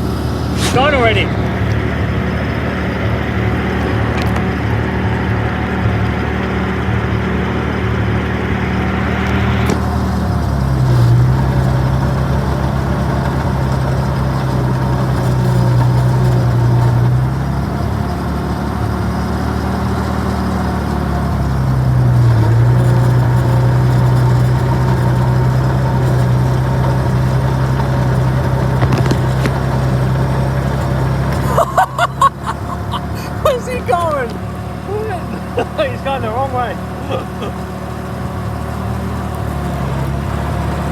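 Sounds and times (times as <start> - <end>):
tug engine running: 0.0 - 40.9.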